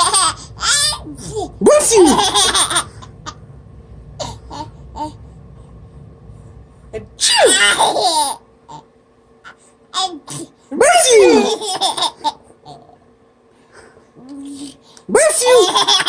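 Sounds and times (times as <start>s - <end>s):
baby laughing: 0.0s - 3.4s, 7.4s - 8.8s, 10.0s - 12.9s, 15.4s - 16.0s.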